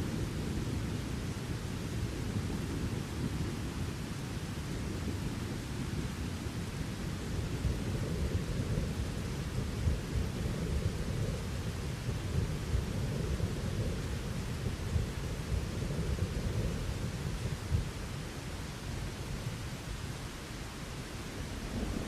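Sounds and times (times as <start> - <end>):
rain hissing: 0.0 - 22.0
rolling thunder: 7.2 - 18.0.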